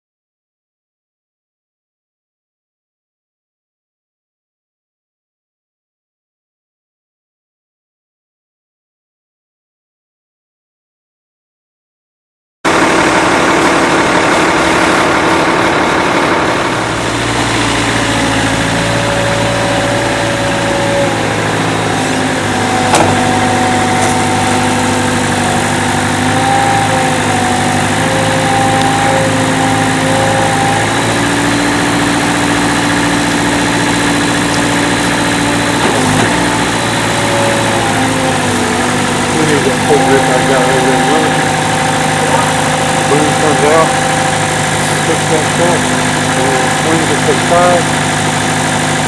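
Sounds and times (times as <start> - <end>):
heavy engine idling: 12.7 - 49.0.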